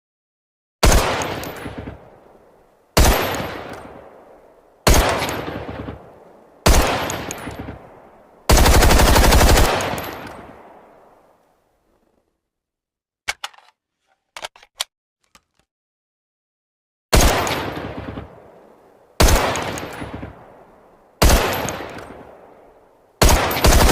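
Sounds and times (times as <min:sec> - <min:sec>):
rapid-fire gun burst: 0:00.8 - 0:01.7, 0:03.0 - 0:03.7, 0:04.9 - 0:06.0, 0:06.6 - 0:07.3, 0:08.5 - 0:10.3, 0:21.2 - 0:21.9, 0:23.2 - 0:23.9
rifle gunshots with echo: 0:00.8 - 0:11.4, 0:17.1 - 0:23.9.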